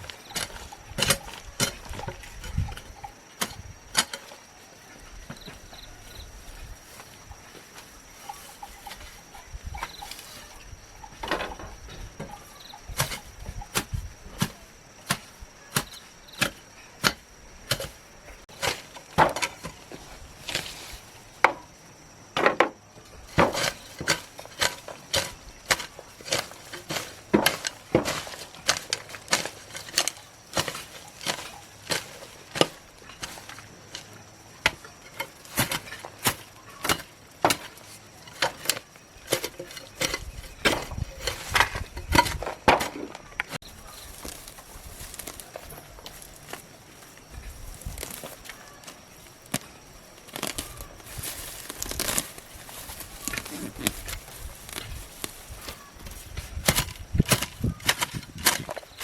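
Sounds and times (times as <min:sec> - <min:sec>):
hand tool chopping: 0:00.0 - 0:04.4, 0:12.9 - 0:20.8, 0:23.3 - 0:43.6, 0:47.8 - 0:59.0
faint insect tone: 0:00.0 - 0:59.0.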